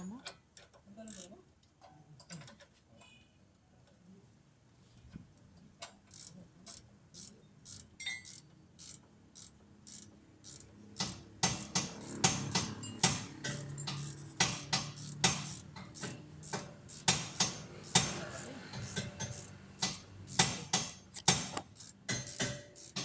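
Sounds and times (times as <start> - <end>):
hand tool metallic clicks: 6.1 - 23.0.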